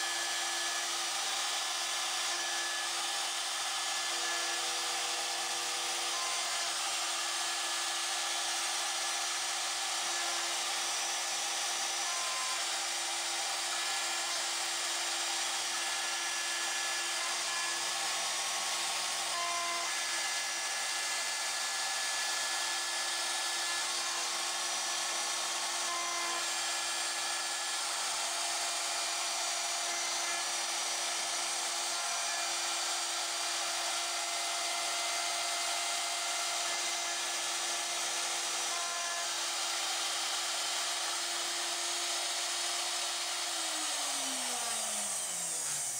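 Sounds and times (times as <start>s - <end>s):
router spindle milling metal: 0.0s - 45.9s.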